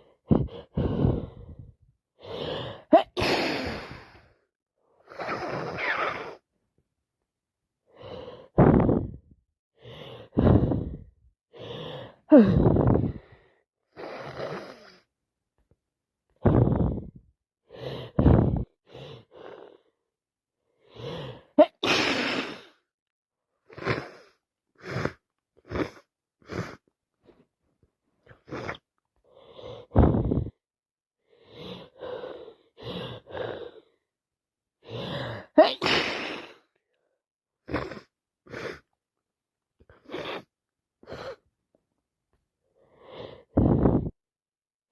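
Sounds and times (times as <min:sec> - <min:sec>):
gasping breaths: 0:00.0 - 0:04.4, 0:09.8 - 0:15.1
person sneezing: 0:02.9 - 0:04.0, 0:21.6 - 0:22.6, 0:35.6 - 0:36.6.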